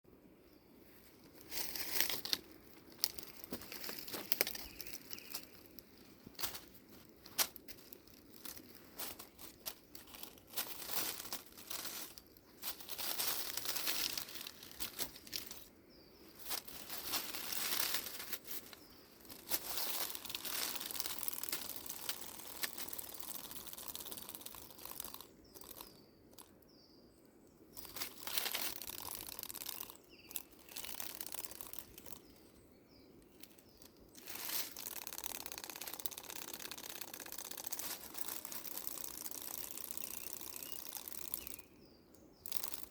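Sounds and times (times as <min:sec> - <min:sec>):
dry leaves rustling and crunching: 0:01.4 - 0:26.5, 0:27.8 - 0:32.4, 0:33.4 - 0:41.7
faint bird chirps: 0:03.0 - 0:06.6, 0:21.8 - 0:34.9, 0:37.9 - 0:42.9.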